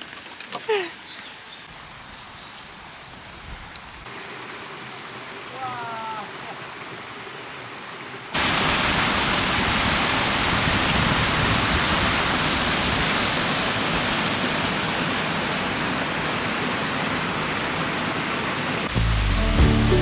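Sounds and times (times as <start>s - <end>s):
waterfall roaring: 4.0s - 20.0s.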